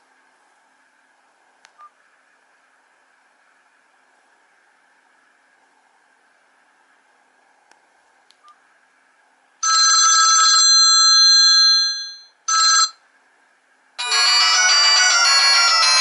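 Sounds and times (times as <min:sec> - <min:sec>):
bell-like phone ringtone: 0:09.6 - 0:13.0, 0:14.0 - 0:16.0
dense phone ringtone: 0:09.6 - 0:13.0, 0:14.0 - 0:16.0.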